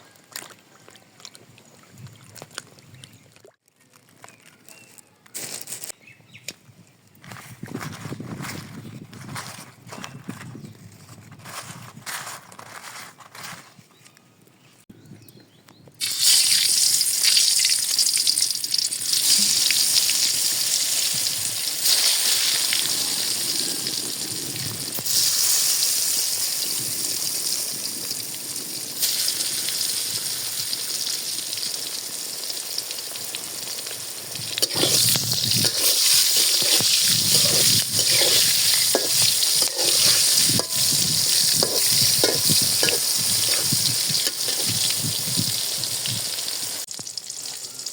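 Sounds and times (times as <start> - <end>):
food sizzling in hot oil: 16.0 - 47.9
spoon stirring and scraping pan: 34.5 - 46.2.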